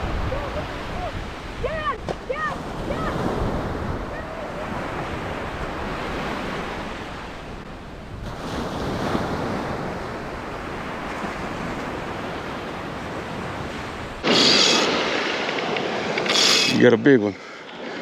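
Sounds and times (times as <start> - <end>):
wind on microphone: 0.0 - 16.8
surf washing onto beach: 0.0 - 18.0.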